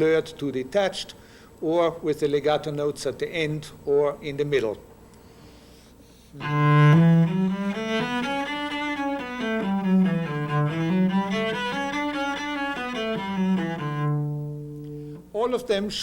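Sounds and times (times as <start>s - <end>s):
cello playing scales: 6.4s - 15.3s.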